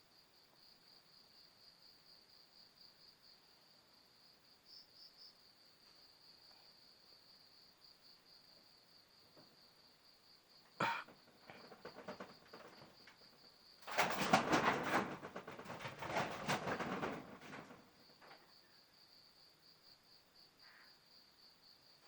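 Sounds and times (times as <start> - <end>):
crickets chirping: 0.0 - 22.0
rustling and crinkling: 10.8 - 18.5.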